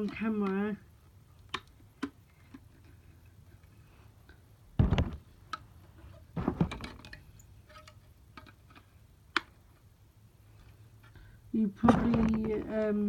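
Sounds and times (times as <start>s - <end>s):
handling noise: 4.8s - 5.4s, 6.3s - 7.2s, 11.8s - 13.0s.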